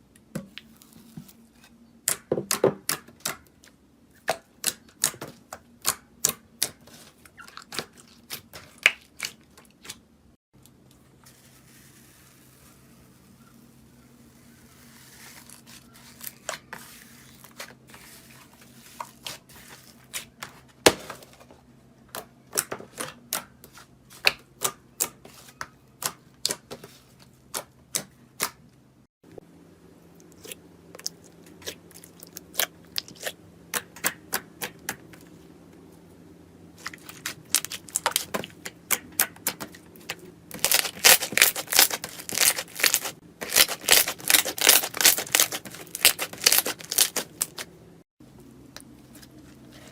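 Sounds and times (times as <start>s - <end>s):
slime squishing and popping: 40.6s - 47.6s.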